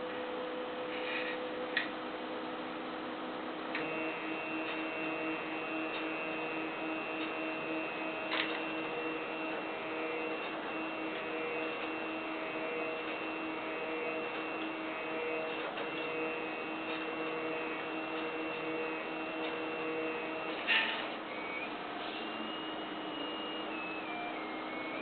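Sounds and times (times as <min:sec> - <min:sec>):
stepper motors whining: 0:03.7 - 0:25.0.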